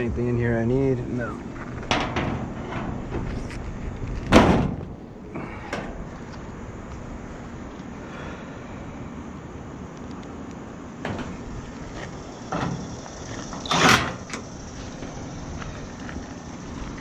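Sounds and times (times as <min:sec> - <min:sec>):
steady background hiss: 0:00.0 - 0:17.0
door slamming shut: 0:04.3 - 0:04.9, 0:11.0 - 0:11.4.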